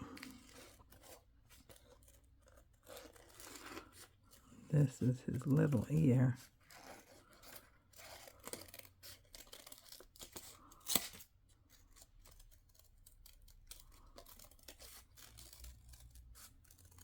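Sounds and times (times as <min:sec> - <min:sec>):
scissors snipping: 0:06.7 - 0:11.2.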